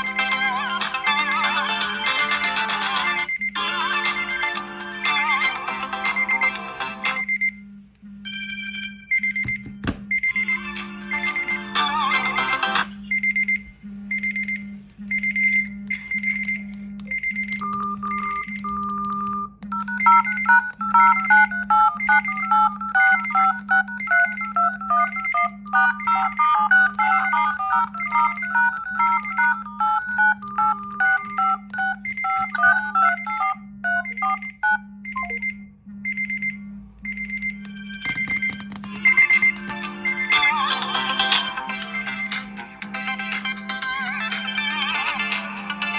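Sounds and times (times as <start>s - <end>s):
electronic melody: 0.0s - 7.5s, 8.3s - 13.3s, 15.4s - 35.5s, 37.6s - 45.9s
high electronic beep: 13.0s - 42.5s.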